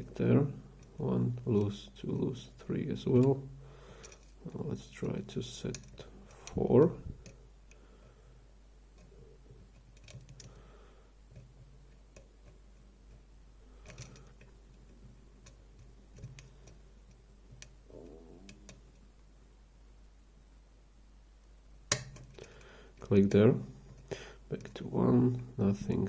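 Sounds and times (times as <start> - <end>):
lock pick clicking and scratching: 8.9 - 10.6, 11.3 - 17.8, 21.9 - 22.6.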